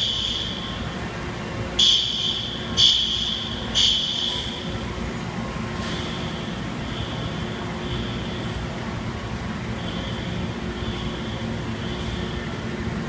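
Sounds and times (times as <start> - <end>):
fire alarm horn blasts: 0.0 - 1.0, 1.8 - 4.7, 6.0 - 8.8, 9.6 - 12.7.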